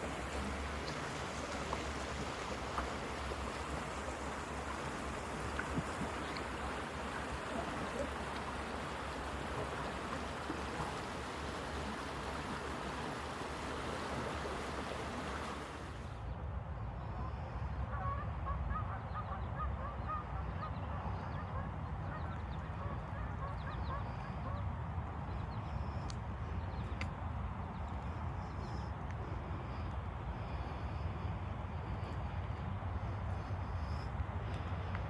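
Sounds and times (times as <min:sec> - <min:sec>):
waterfowl calling: 0:00.0 - 0:15.9, 0:17.9 - 0:24.6
running water rushing: 0:00.0 - 0:16.1.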